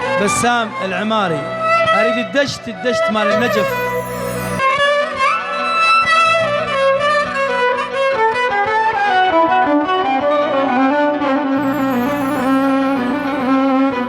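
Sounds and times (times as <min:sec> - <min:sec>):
violin melody: 0:00.9 - 0:07.7, 0:11.6 - 0:14.0.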